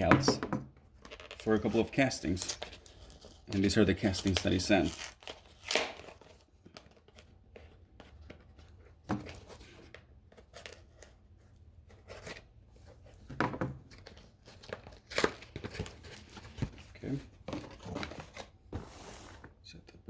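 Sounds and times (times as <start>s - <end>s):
packing material crinkling and tearing: 1.0s - 7.4s, 13.9s - 18.4s.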